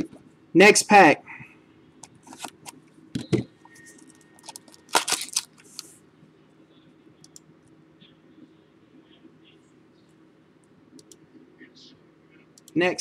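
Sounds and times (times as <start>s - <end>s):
foil pack tearing and crinkling: 4.4s - 5.8s
cards clicking: 4.4s - 5.9s.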